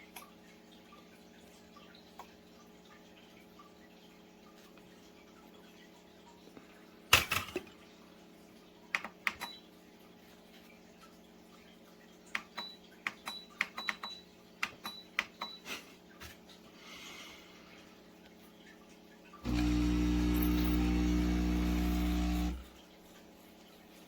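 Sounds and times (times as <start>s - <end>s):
kitchenware clicking and clinking: 7.1s - 7.8s.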